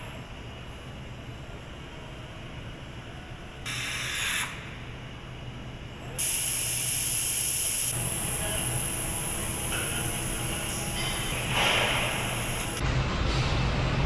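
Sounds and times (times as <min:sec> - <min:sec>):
factory hum: 0:00.0 - 0:14.0
compressed air hissing: 0:06.2 - 0:12.8.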